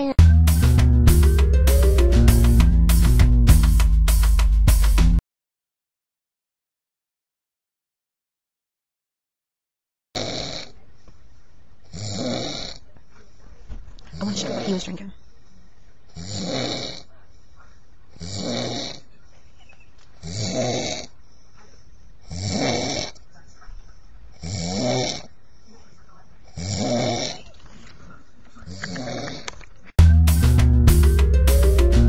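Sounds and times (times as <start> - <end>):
loud music with drums and guitar: 0.2 - 5.2, 30.0 - 32.0
man snoring: 10.2 - 10.8, 11.9 - 12.8, 16.1 - 17.1, 18.2 - 19.0, 20.2 - 21.1, 22.2 - 23.2, 24.4 - 25.3, 26.6 - 27.4.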